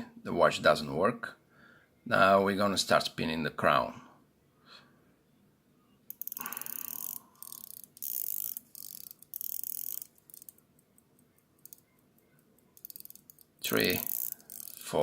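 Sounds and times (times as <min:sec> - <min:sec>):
watch winding ratchet clicks: 0:06.1 - 0:15.0.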